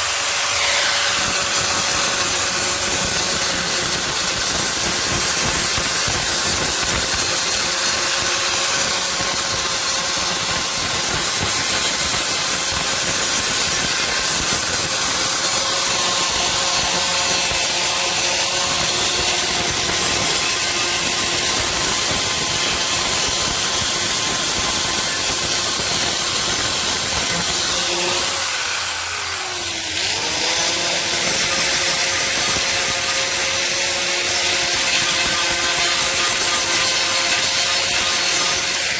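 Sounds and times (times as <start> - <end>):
power tool grinding plastic: 0.0 - 38.9.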